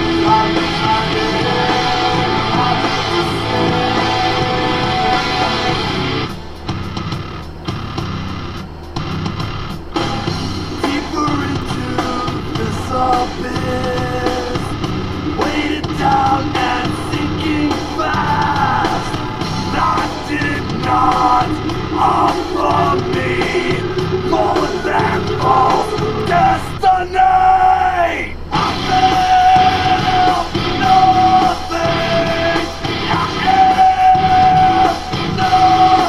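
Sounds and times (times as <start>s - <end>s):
rock music with shouted vocals: 0.0s - 36.0s.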